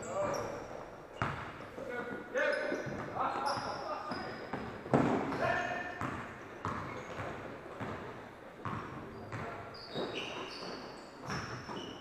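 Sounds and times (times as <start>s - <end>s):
sneaker squeaks: 0.0s - 12.0s
basketball bouncing on court: 1.2s - 1.6s, 2.8s - 11.9s.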